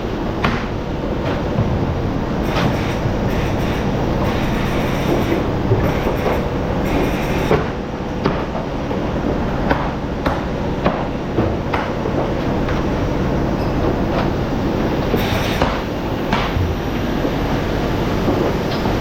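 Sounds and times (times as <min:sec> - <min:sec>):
factory machinery humming and rattling: 0:00.0 - 0:19.0
sharp knocks and clanks: 0:00.4 - 0:08.7.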